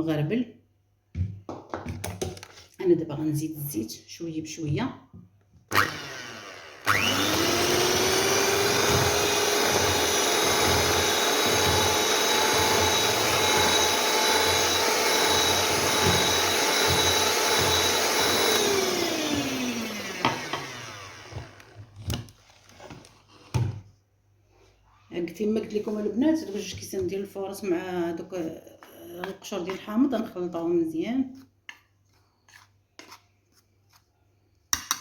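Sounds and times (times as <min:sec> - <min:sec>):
electric mixer humming: 0:05.7 - 0:21.9.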